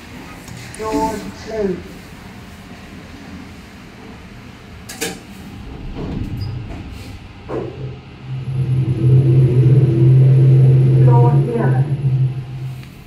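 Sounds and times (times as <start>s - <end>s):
lift motor low hum: 3.9s - 13.0s
knocks and creaks: 5.4s - 12.8s.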